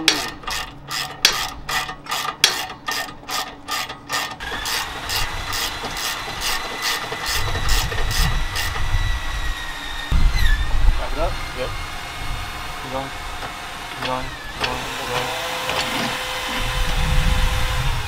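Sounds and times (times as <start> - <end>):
ratchet wrench clicking: 0.1 - 8.8.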